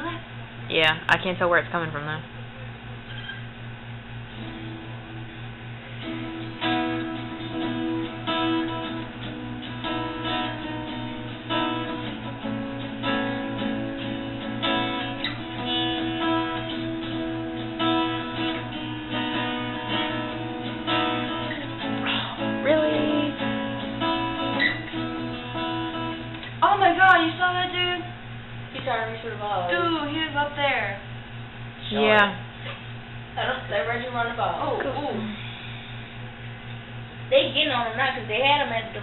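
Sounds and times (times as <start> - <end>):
steady low hum: 0.0 - 39.0
acoustic guitar strumming chords: 4.3 - 28.1.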